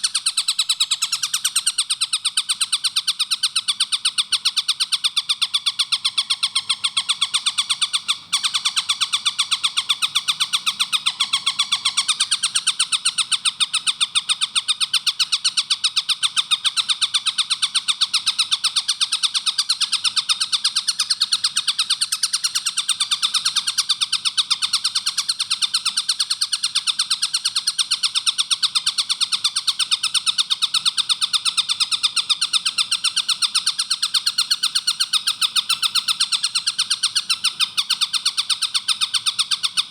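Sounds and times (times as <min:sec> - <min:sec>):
kingfisher calling: 0:00.0 - 0:13.9.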